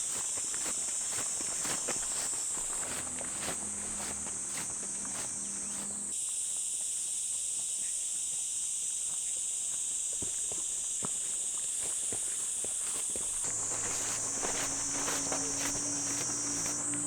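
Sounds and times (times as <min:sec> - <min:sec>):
footsteps on gravel path: 0:00.0 - 0:06.1, 0:10.1 - 0:17.0
high-pitched insect chorus: 0:00.0 - 0:17.0.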